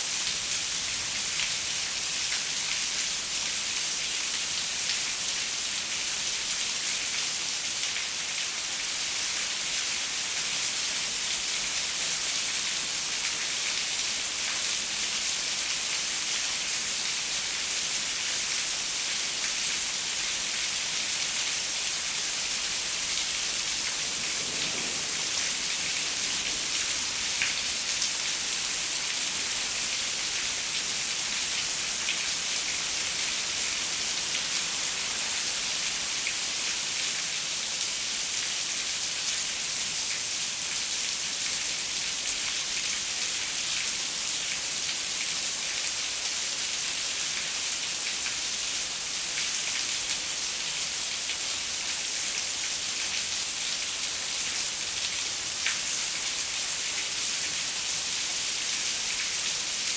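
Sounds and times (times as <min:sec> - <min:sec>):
rain falling on a window: 0:00.2 - 0:59.9.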